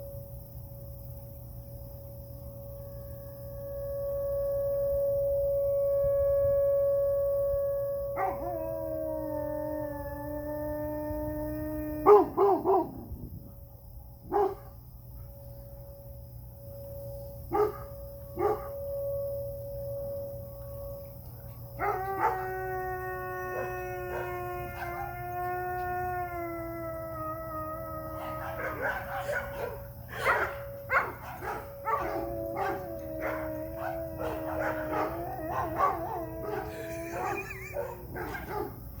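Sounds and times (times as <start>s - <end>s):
tornado siren: 1.7s - 14.0s, 14.9s - 38.2s
dog howling: 7.2s - 13.1s, 21.8s - 38.8s
dog yipping and barking: 17.5s - 17.8s, 18.4s - 18.7s, 28.2s - 38.8s.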